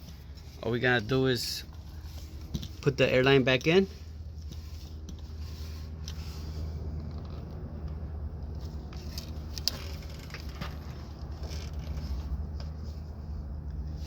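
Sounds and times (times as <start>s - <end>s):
steady low hum: 0.0s - 14.0s
small metallic clicks: 9.0s - 12.0s.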